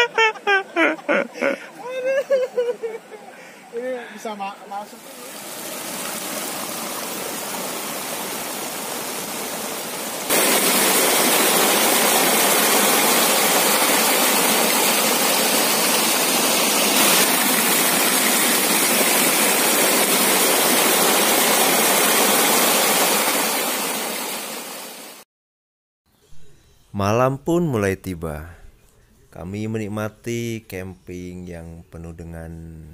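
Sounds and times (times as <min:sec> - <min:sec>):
heavy rain hissing: 0:04.9 - 0:25.2.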